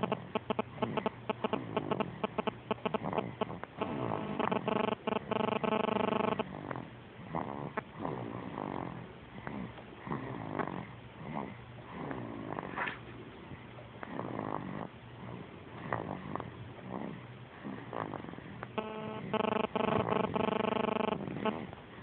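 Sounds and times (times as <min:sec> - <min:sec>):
person snoring: 0:00.0 - 0:12.7
steady pitched tone: 0:03.8 - 0:06.4, 0:18.8 - 0:21.6.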